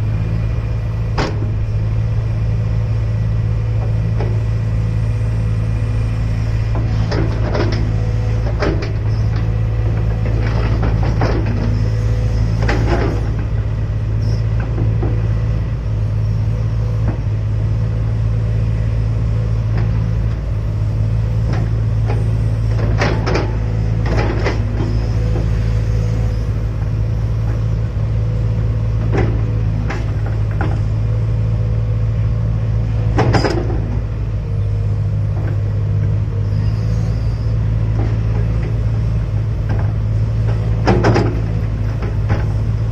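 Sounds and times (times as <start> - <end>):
excavator diesel engine running: 0.0 - 42.9
short knocks and clanks: 1.1 - 1.8, 33.1 - 34.0, 39.6 - 42.9.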